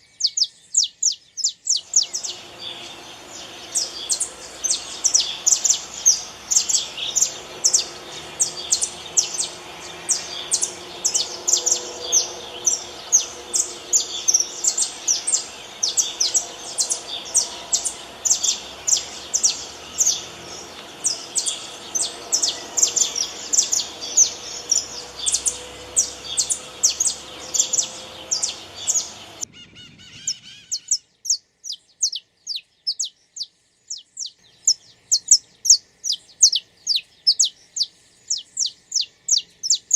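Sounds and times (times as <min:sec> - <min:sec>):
finch high chirps: 0:00.0 - 0:39.9
background hiss: 0:01.8 - 0:29.4.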